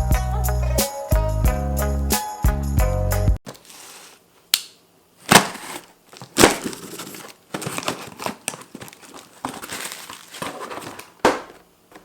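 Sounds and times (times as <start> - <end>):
packaging rustling and crinkling: 3.5 - 4.3, 5.2 - 11.6
packaging crackling: 5.2 - 11.6.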